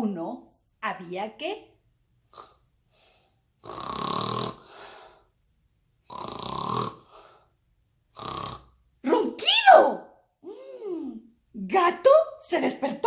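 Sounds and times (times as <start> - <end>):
person imitating snoring: 2.3 - 2.6, 3.6 - 4.7, 6.1 - 7.2, 8.1 - 8.7.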